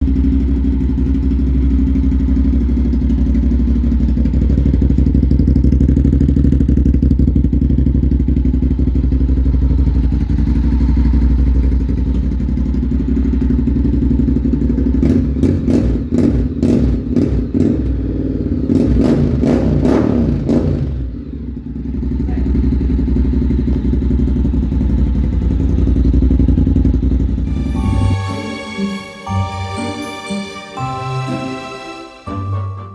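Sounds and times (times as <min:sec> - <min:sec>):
motorcycle engine idling and revving: 0:00.0 - 0:28.1
music: 0:27.4 - 0:32.9.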